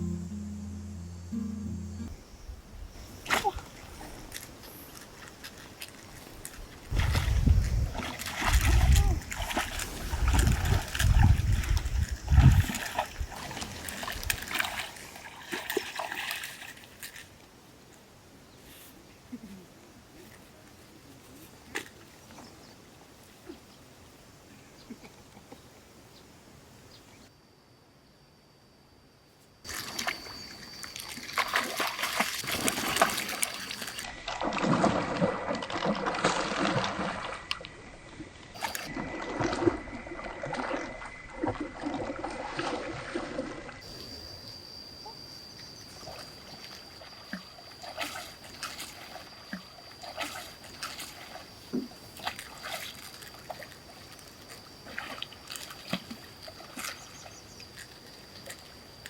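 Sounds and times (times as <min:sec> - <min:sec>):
water splashing and sloshing: 0:03.2 - 0:17.6, 0:29.7 - 0:44.1, 0:45.9 - 0:59.0.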